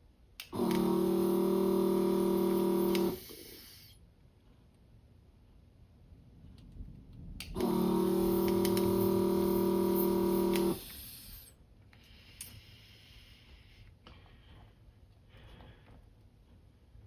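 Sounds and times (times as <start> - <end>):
small electric motor buzzing: 0.6 - 3.7, 7.6 - 11.5.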